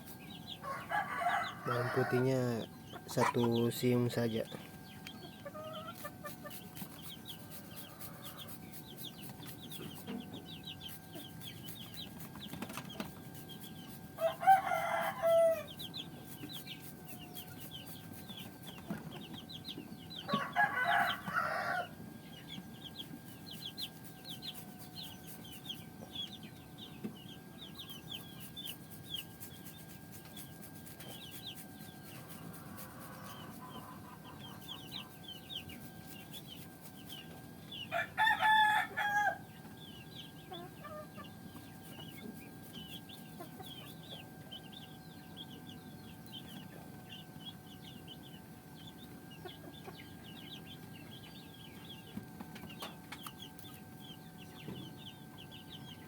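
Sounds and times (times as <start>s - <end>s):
faint steady hum: 0.0s - 56.0s
rooster crowing: 0.6s - 2.6s, 14.2s - 15.7s, 20.3s - 22.0s, 37.9s - 39.5s.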